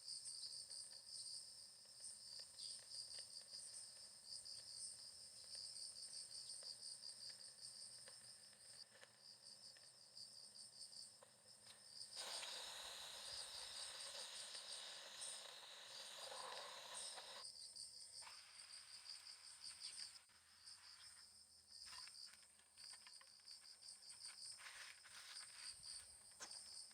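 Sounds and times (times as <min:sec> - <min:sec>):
insects chirping in trills: 0:00.0 - 0:26.9
steady hiss: 0:10.6 - 0:21.2.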